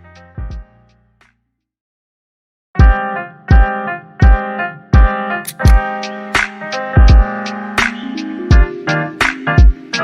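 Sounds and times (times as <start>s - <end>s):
electronic keyboard chords: 0.0s - 1.2s, 2.8s - 10.0s
deep heavy beat: 5.0s - 10.0s.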